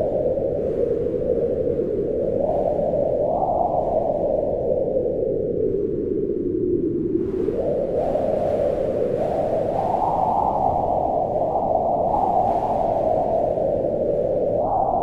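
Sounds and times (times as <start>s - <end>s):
wind howling in gusts: 0.0s - 15.0s.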